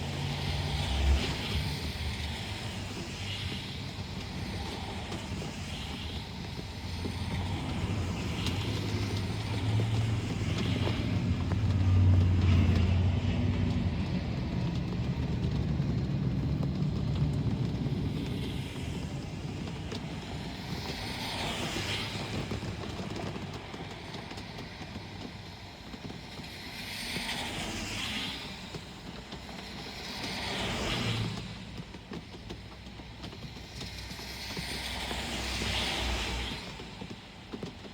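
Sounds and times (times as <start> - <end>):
low engine rumble: 0.0 - 21.1
cars swishing past on wet road: 0.0 - 37.9.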